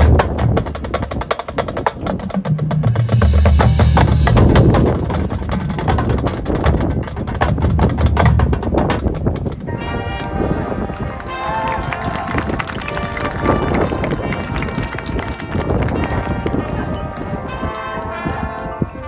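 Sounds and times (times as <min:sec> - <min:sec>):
rapid drumline strokes: 0:00.0 - 0:09.7
marching band playing: 0:00.0 - 0:19.0
low held brass notes: 0:09.7 - 0:19.0.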